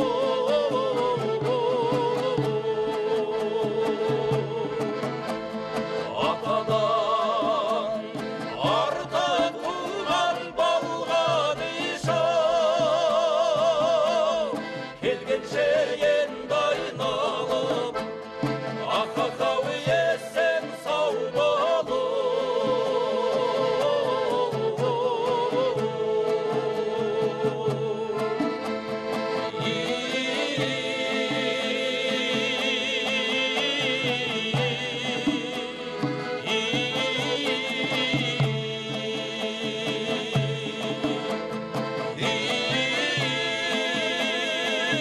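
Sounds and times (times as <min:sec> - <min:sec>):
instrumental accompaniment: 0:00.0 - 0:45.0
person singing with heavy vibrato: 0:00.0 - 0:45.0.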